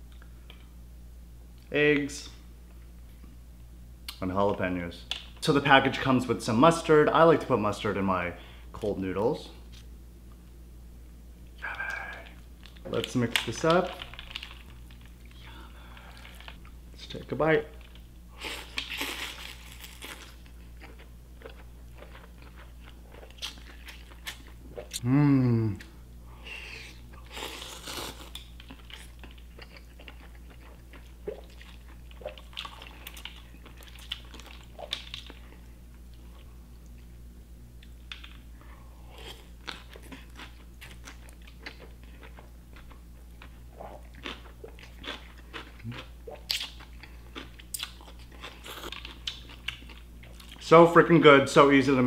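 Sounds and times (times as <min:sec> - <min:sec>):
faint low hum: 0:00.0 - 0:52.0
person chewing and crunching food: 0:11.5 - 0:50.7.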